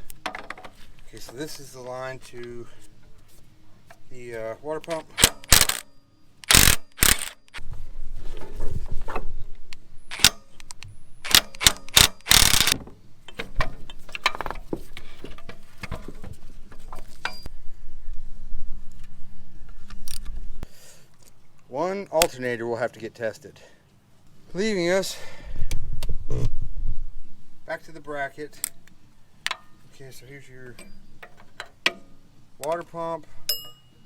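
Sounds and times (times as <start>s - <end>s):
ratchet wrench clicking: 5.2s - 7.6s, 11.3s - 12.8s
sharp metal clanks: 30.7s - 32.2s, 33.5s - 34.0s.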